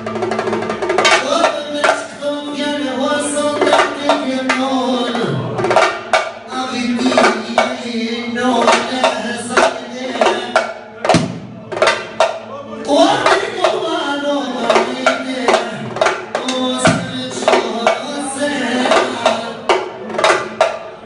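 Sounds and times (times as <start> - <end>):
drum beating: 0.0 - 21.0.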